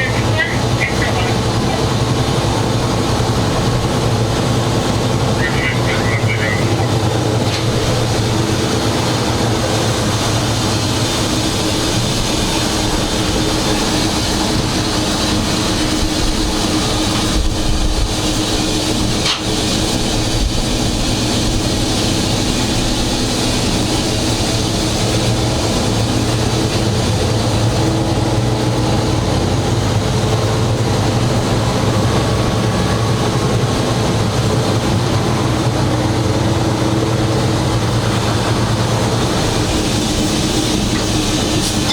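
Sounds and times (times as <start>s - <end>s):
diesel locomotive engine droning: 0.0s - 41.9s.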